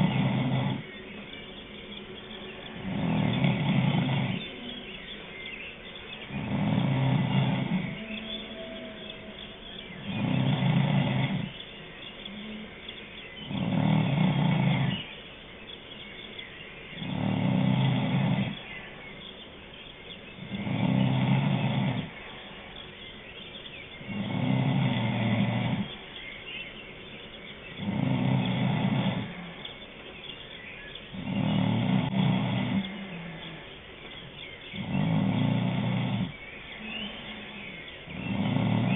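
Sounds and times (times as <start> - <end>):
person snoring: 2.8 - 4.5, 31.1 - 33.6.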